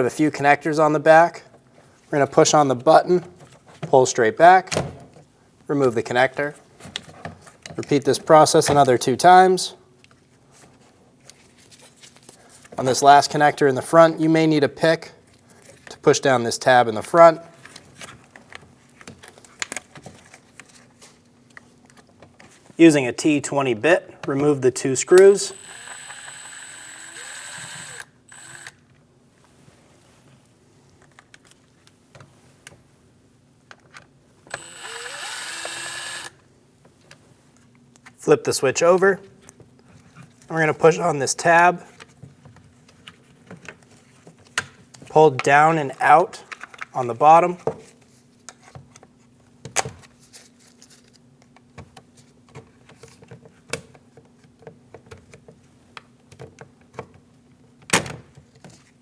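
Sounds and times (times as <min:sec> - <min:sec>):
power driver whirring: 0:25.1 - 0:28.8, 0:34.5 - 0:36.4.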